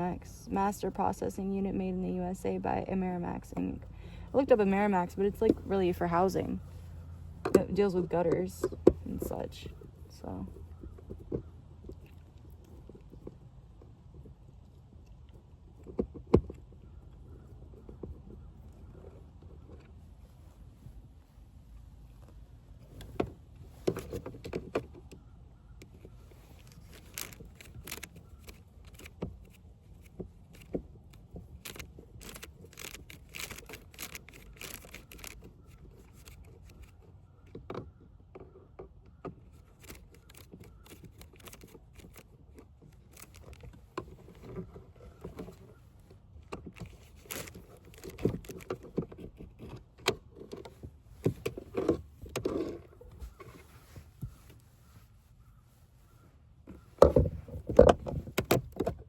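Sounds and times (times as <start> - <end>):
screwdriver and parts clicking: 31.6 - 36.9.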